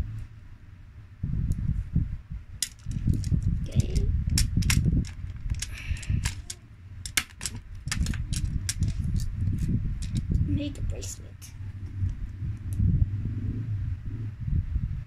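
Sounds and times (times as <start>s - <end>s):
low rumble: 0.0s - 15.0s
magnetic balls clicking together: 2.6s - 12.9s.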